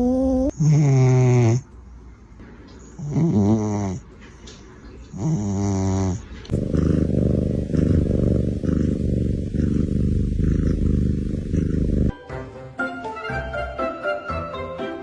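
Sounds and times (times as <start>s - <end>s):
pitched snort: 0.6s - 1.7s, 3.0s - 4.0s, 5.2s - 12.1s
rumbling snore: 0.6s - 1.7s, 3.0s - 4.0s, 5.2s - 12.1s.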